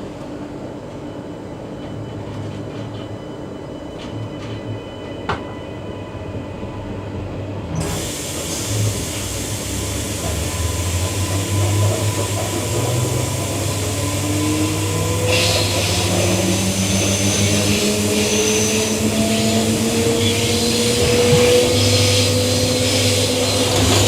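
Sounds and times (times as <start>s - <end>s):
train wheels rumbling on track: 6.9s - 24.0s.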